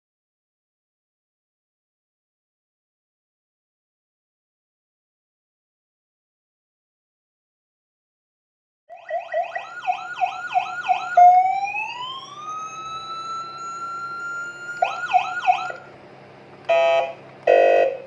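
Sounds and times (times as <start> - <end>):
electronic siren yelp: 8.9 - 15.9, 16.7 - 18.0
buzzing horn blast: 16.7 - 18.0.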